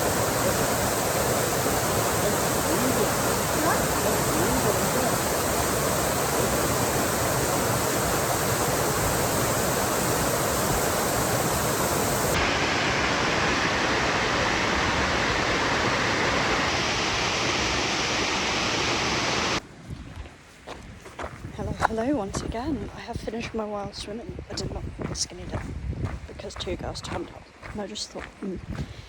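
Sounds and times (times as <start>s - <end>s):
waterfall rushing: 0.0s - 19.6s.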